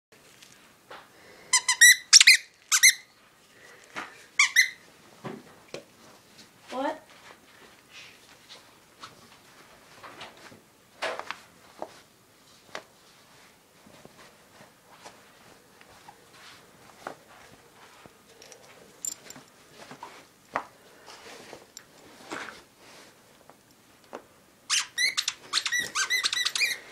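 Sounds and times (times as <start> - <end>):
squeaky toy squeaking: 1.5 - 3.1, 4.4 - 4.8, 24.7 - 26.9.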